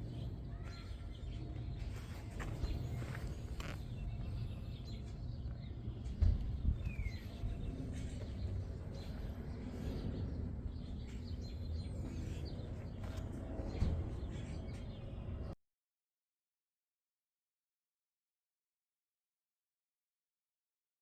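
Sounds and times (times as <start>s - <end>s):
bird chirp: 0.0s - 15.6s
steady low rumble: 0.0s - 15.6s.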